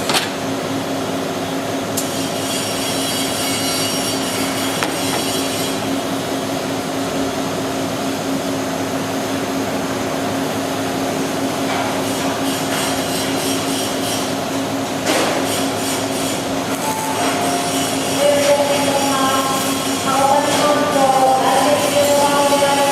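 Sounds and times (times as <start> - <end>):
packing machine motor hum: 0.0 - 12.5.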